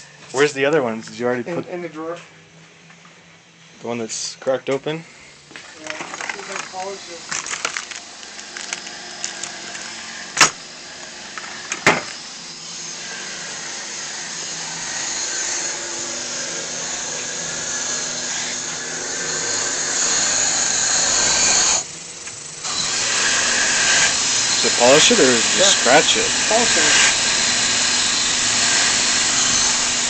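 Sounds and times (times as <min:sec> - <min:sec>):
power tool polishing brass: 0:06.0 - 0:30.0.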